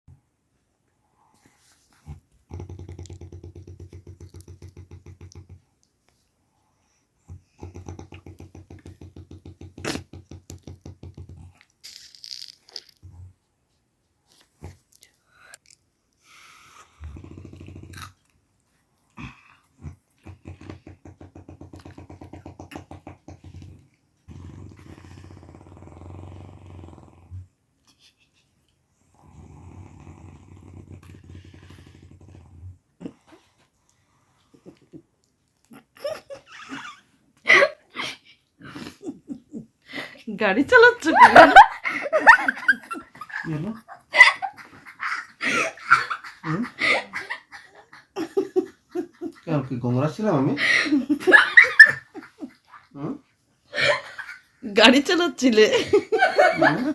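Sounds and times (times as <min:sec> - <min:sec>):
snort: 0:02.0 - 0:05.6, 0:07.3 - 0:11.6, 0:16.2 - 0:18.2, 0:19.1 - 0:27.5, 0:29.1 - 0:33.6.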